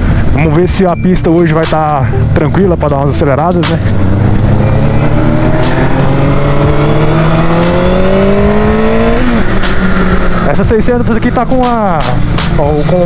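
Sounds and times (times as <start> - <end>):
motorcycle engine accelerating: 1.3 - 13.0.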